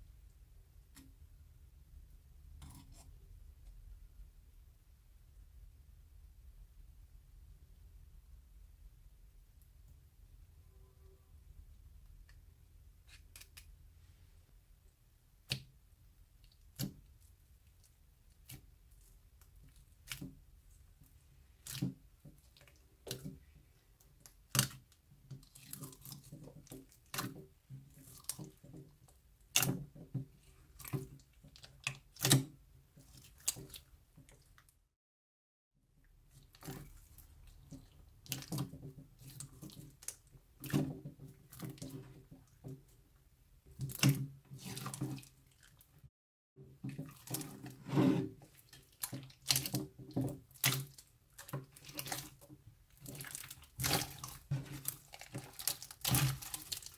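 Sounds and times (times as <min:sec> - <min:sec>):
hands squishing slime: 0:15.4 - 0:34.6, 0:36.3 - 0:43.0, 0:43.7 - 0:45.9, 0:46.8 - 0:56.9.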